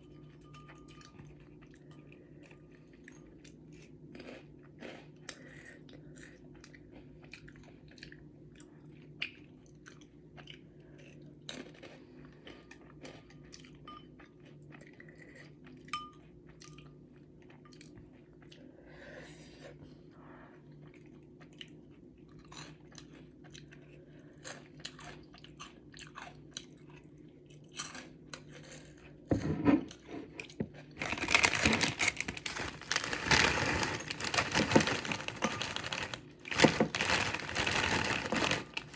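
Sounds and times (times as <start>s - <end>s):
person chewing noodles: 3.0s - 13.8s, 20.7s - 29.2s
crinkling rustling noise: 31.0s - 38.9s.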